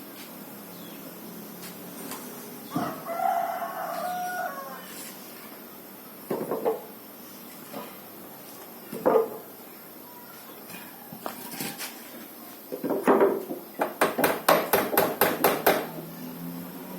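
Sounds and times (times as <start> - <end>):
rooster crowing: 2.6 - 5.1, 10.8 - 11.9.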